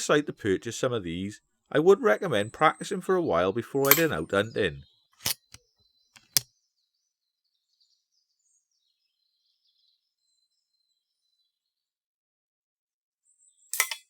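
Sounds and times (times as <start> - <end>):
short sharp clicks: 5.2 - 5.6, 6.2 - 6.4.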